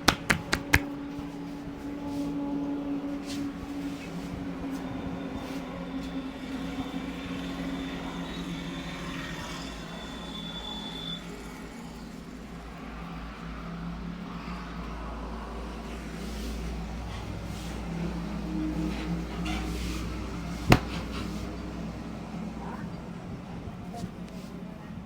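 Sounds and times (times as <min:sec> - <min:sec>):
faint taps: 0:20.7 - 0:21.0.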